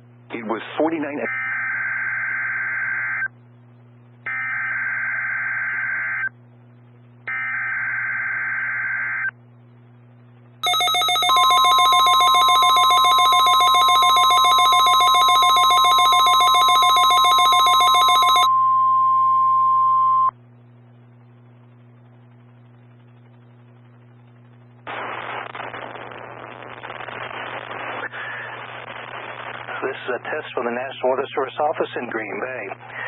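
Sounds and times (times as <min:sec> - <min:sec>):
rapidly pulsing alarm: 0:01.2 - 0:03.3, 0:04.3 - 0:06.3, 0:07.3 - 0:09.3, 0:10.6 - 0:18.5
steady warning alarm tone: 0:10.6 - 0:18.5.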